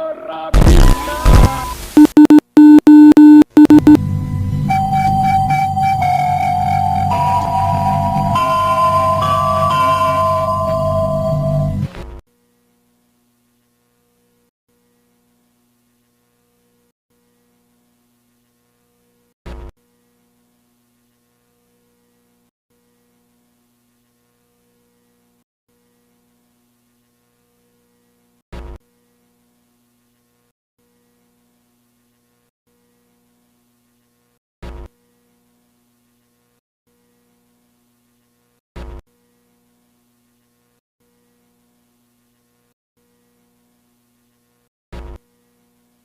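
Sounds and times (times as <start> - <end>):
short loud bursts: 0.6 - 3.1.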